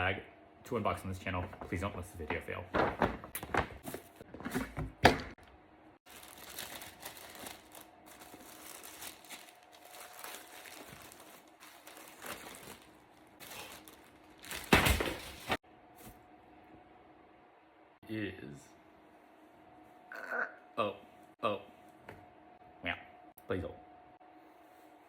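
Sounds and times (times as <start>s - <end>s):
paper packaging rustling: 6.1s - 15.6s.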